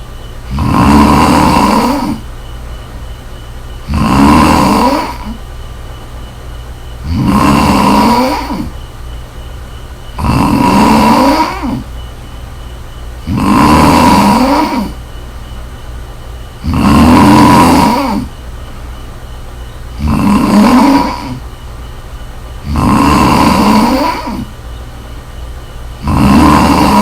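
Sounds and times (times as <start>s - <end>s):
steady low hum: 0.0s - 27.0s
loud snoring: 0.5s - 2.3s, 3.8s - 5.4s, 7.0s - 8.9s, 10.1s - 12.1s, 13.2s - 15.0s, 16.6s - 18.4s, 19.9s - 21.5s, 22.6s - 24.6s, 26.0s - 27.0s.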